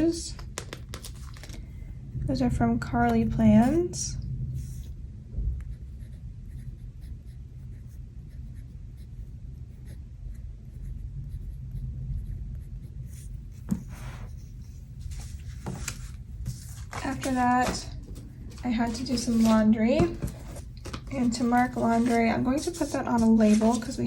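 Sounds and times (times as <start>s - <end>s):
stickers scratching and tapping on paper: 0.3s - 1.6s, 13.6s - 14.4s, 15.0s - 24.0s
paper rustle: 0.4s - 1.7s, 15.0s - 24.0s
thunderstorm rumble: 1.7s - 5.7s.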